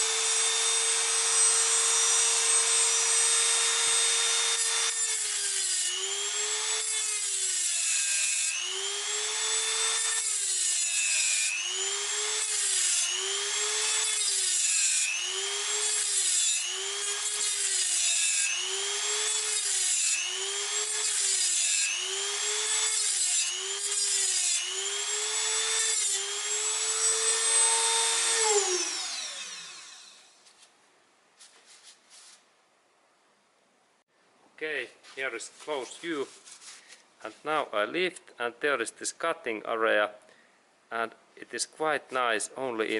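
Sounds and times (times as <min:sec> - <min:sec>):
rotary tool cutting metal: 0:00.0 - 0:30.3.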